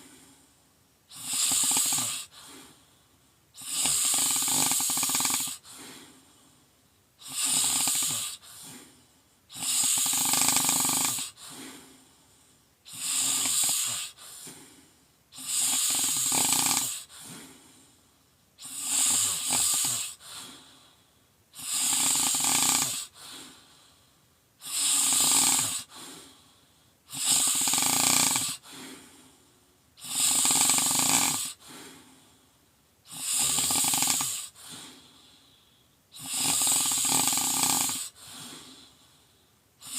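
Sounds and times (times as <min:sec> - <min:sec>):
soft breath out: 0:00.0 - 0:00.6, 0:02.2 - 0:03.2, 0:05.6 - 0:06.7, 0:08.3 - 0:09.3, 0:11.3 - 0:12.8, 0:13.9 - 0:15.1, 0:17.0 - 0:18.2, 0:28.6 - 0:29.6, 0:31.5 - 0:32.6, 0:34.5 - 0:36.0, 0:38.1 - 0:39.6
person snoring loudly: 0:01.1 - 0:02.7, 0:03.6 - 0:06.0, 0:07.2 - 0:08.9, 0:09.5 - 0:11.8, 0:12.9 - 0:14.8, 0:15.4 - 0:17.5, 0:18.6 - 0:20.6, 0:21.6 - 0:23.6, 0:24.6 - 0:26.3, 0:27.1 - 0:29.1, 0:30.0 - 0:32.0, 0:33.1 - 0:35.0, 0:36.2 - 0:38.8.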